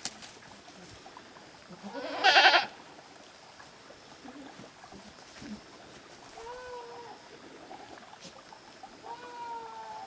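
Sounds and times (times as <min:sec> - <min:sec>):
goat bleating: 0:01.8 - 0:02.7.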